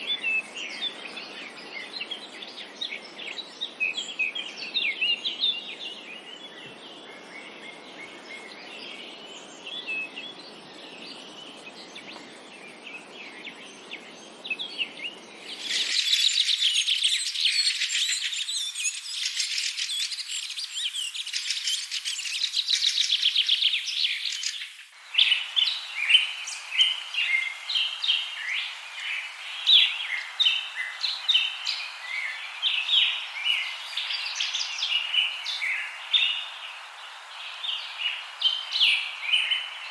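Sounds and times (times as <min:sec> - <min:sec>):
songbirds chirping and singing: 0:14.3 - 0:39.9
low background hiss: 0:15.4 - 0:39.9.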